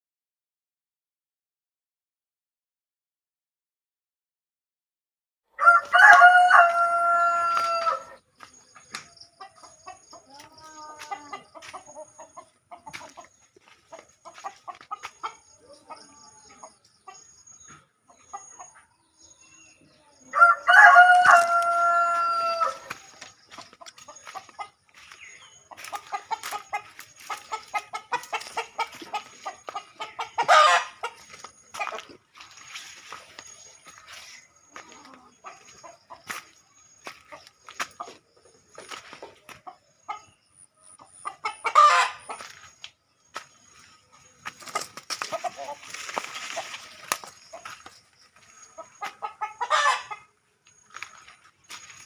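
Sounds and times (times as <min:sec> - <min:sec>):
rooster crowing: 0:05.5 - 0:08.2, 0:20.3 - 0:23.0, 0:30.4 - 0:31.0
chickens clucking: 0:05.8 - 0:52.0
chicken squawk: 0:20.4 - 0:22.9, 0:25.9 - 0:31.2, 0:41.2 - 0:42.5, 0:48.8 - 0:50.3.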